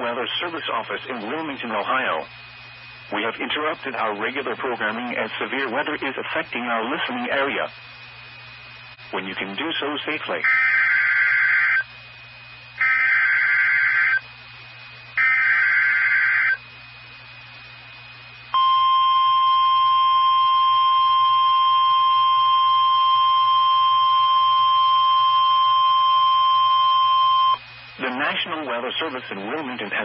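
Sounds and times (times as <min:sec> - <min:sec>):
faint radio receiver hum: 0:00.0 - 0:30.0
steady warning alarm tone: 0:10.1 - 0:12.0, 0:12.8 - 0:14.3, 0:15.1 - 0:16.6, 0:18.5 - 0:27.6
two-tone data warble: 0:10.1 - 0:12.0, 0:12.8 - 0:14.3, 0:15.2 - 0:16.6, 0:18.6 - 0:27.6.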